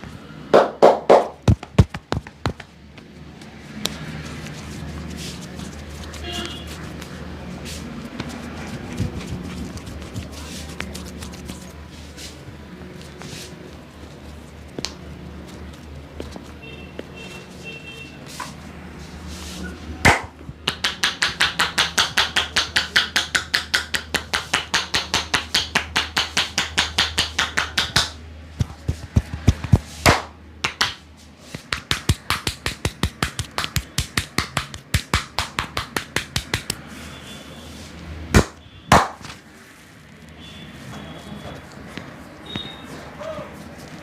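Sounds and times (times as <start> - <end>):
hands slapping body: 0.6 - 4.0, 20.0 - 36.8, 38.3 - 39.4.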